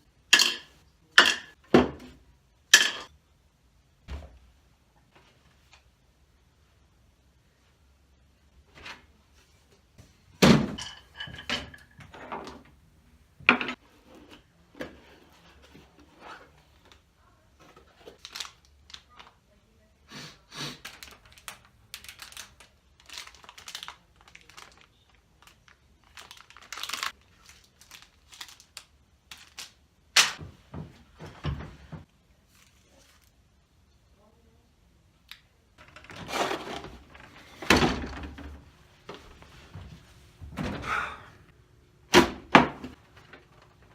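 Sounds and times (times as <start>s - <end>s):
packaging rustling: 17.7s - 19.3s, 20.8s - 29.8s.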